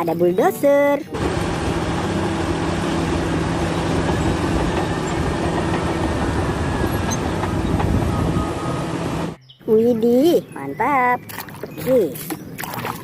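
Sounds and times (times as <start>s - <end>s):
bulldozer diesel engine running: 1.1s - 9.4s.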